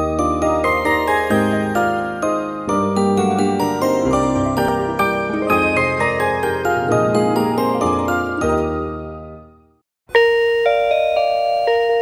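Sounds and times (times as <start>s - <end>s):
bell-like electronic chime melody: 10.1s - 12.0s.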